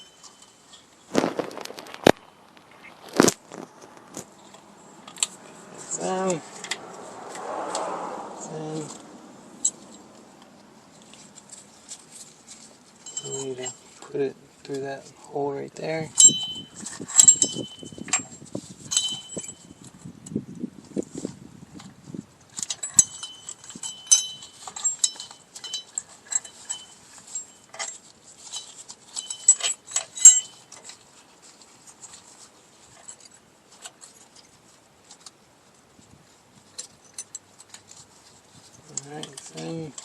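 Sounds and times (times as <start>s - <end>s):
small metal parts clinking: 0.0s - 2.0s, 11.0s - 14.1s, 16.1s - 19.8s, 22.5s - 31.0s.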